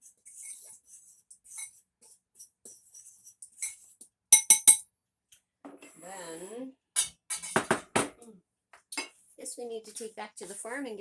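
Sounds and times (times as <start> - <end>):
fork stirring flour in bowl: 0.0 - 4.8
fork clinking against bowl: 4.4 - 4.8.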